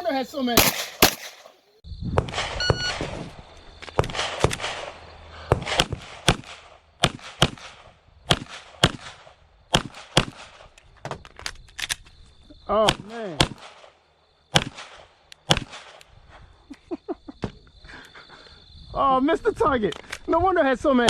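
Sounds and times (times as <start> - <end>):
pistol shots with echo: 0.6 - 1.6
brief beep: 2.6 - 3.1.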